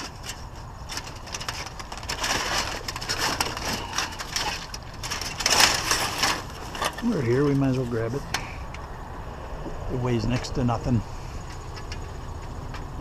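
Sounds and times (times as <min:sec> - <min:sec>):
scrap trim crackling and clattering: 0:00.0 - 0:08.9
car engine idling: 0:00.0 - 0:13.0.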